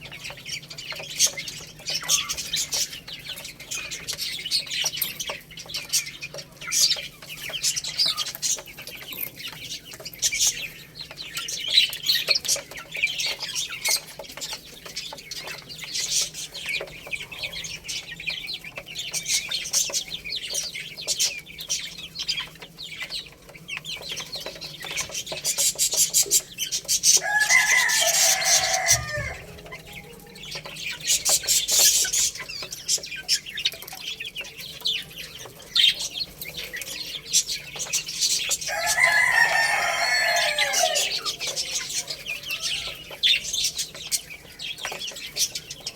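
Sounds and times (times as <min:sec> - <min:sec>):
baby chicks peeping: 0:00.0 - 0:45.9
lower louder chick call: 0:27.2 - 0:29.6.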